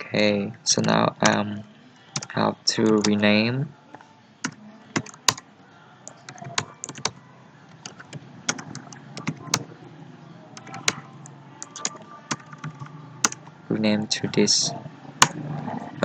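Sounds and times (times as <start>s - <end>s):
keyboard typing clicks: 4.9s - 5.4s, 6.1s - 9.7s, 10.6s - 11.0s, 11.6s - 13.4s.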